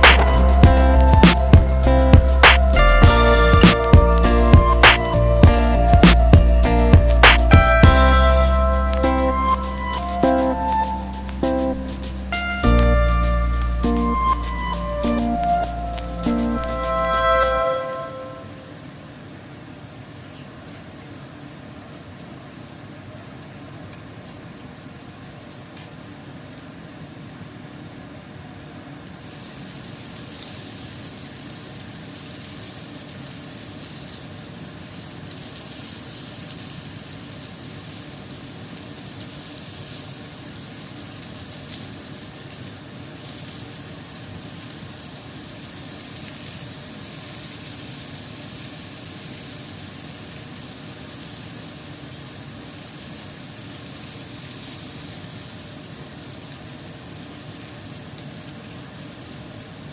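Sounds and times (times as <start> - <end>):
fish sizzling in a pan: 29.2 - 56.5.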